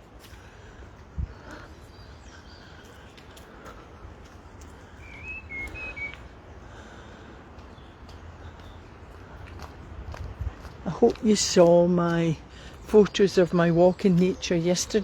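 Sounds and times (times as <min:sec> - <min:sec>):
bird chirping: 0:05.0 - 0:06.3
wind on microphone: 0:09.8 - 0:10.8.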